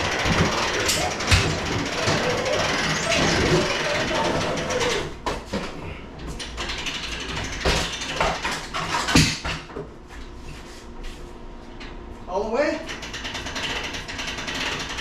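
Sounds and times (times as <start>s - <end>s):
winch ratchet clicking: 6.4s - 8.6s, 12.8s - 15.0s.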